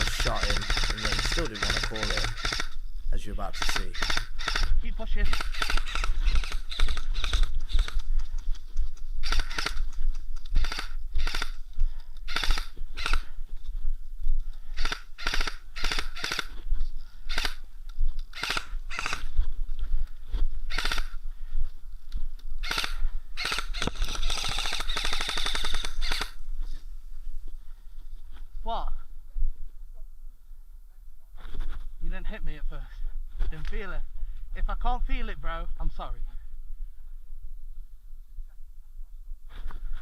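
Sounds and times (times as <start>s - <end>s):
airsoft guns firing bursts: 0.0s - 2.8s, 3.4s - 8.0s, 9.2s - 9.9s, 10.6s - 11.6s, 12.3s - 13.3s, 14.8s - 16.5s, 18.3s - 19.3s, 20.7s - 21.2s, 22.6s - 26.4s.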